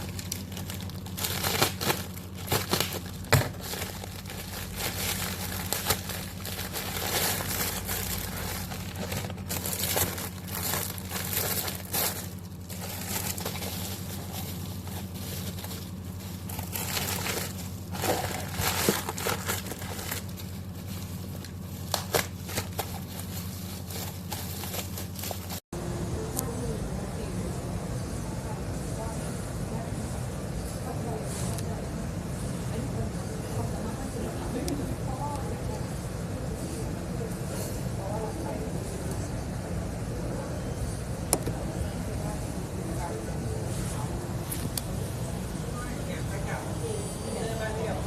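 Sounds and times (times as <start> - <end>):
plastic packaging crinkling: 0.0 - 25.6
steady low hum: 0.0 - 48.0.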